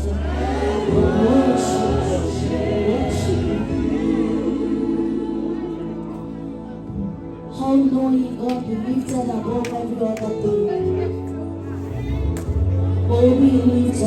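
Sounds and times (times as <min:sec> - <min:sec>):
gospel choir singing: 0:00.0 - 0:07.2.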